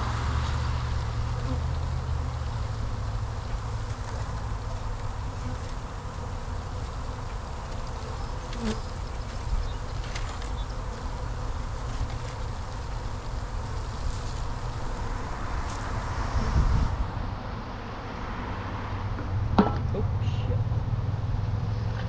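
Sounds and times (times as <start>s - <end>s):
bees buzzing: 0.0s - 17.1s.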